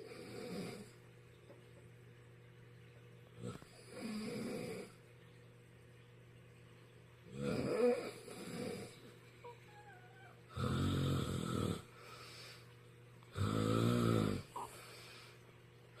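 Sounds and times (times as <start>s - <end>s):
man snoring loudly: 0.0s - 0.9s, 3.4s - 4.9s, 7.4s - 9.0s, 10.5s - 11.9s, 13.3s - 14.6s.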